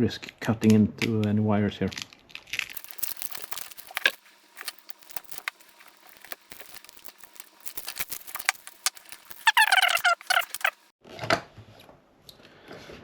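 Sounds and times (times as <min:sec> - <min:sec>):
tape crinkles and clicks: 0:02.6 - 0:10.9
tape tearing and crackling: 0:02.7 - 0:10.9.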